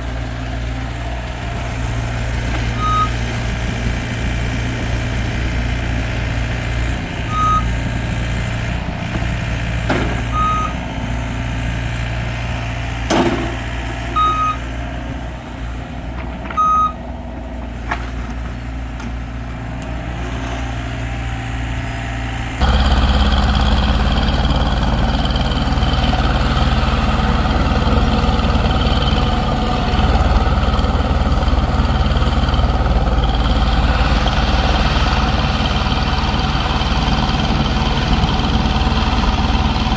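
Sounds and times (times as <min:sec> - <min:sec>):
diesel engine running: 0:00.0 - 0:39.9
backup alarm beeps: 0:02.8 - 0:03.2, 0:07.3 - 0:07.7, 0:10.3 - 0:10.8, 0:14.1 - 0:14.6, 0:16.6 - 0:17.0
sharp knocks: 0:09.1 - 0:10.5, 0:13.1 - 0:14.0.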